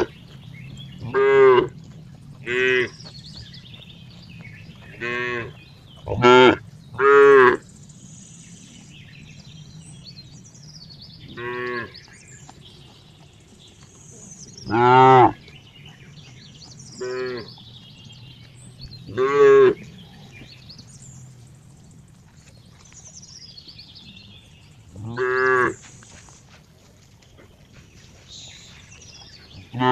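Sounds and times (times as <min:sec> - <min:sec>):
cow mooing: 0:01.0 - 0:01.8, 0:05.0 - 0:05.5, 0:06.1 - 0:07.6, 0:14.7 - 0:15.4, 0:19.1 - 0:19.8, 0:25.0 - 0:25.8, 0:29.7 - 0:29.9.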